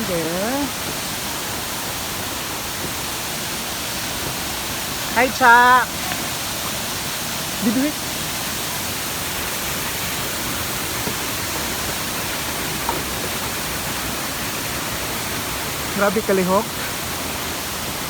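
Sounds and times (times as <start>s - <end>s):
waterfall rushing: 0.0s - 18.0s.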